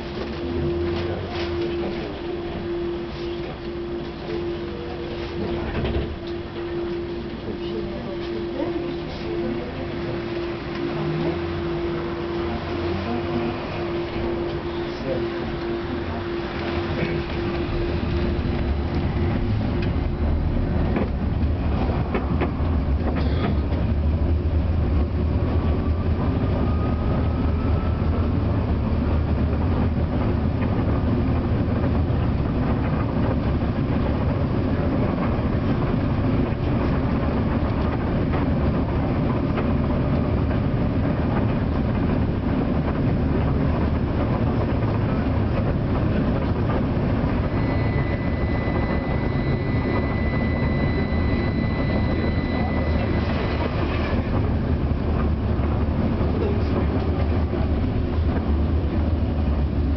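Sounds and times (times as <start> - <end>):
faint rising whine: 0.0 - 23.0, 33.2 - 59.9
tram wheels rumbling on rails: 0.0 - 59.9
thin high whistle: 47.5 - 53.6.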